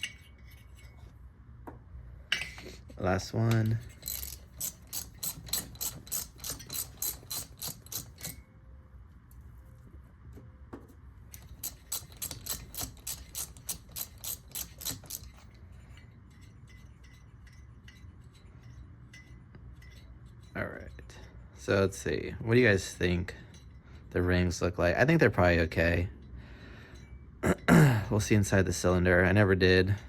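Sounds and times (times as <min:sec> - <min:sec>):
ratchet wrench clicking: 0:03.5 - 0:08.4, 0:11.3 - 0:15.6.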